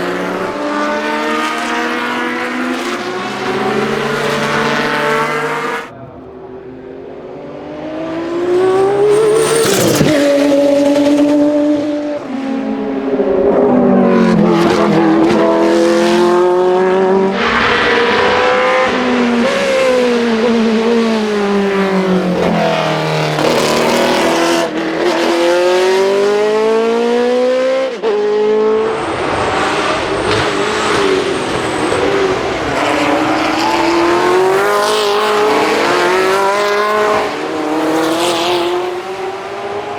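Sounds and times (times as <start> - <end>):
car passing at speed: 0.0 - 39.9
racing car engines revving: 0.0 - 39.9.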